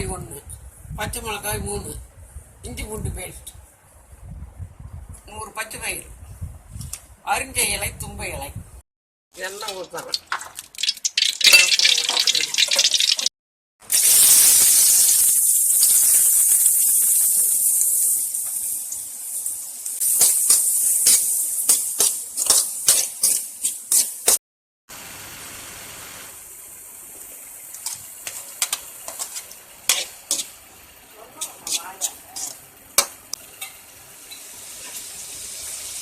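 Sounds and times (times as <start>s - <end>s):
food sizzling in hot oil: 9.4s - 36.0s
spoon scraping a pan: 20.2s - 24.4s, 27.7s - 30.6s, 31.3s - 35.0s.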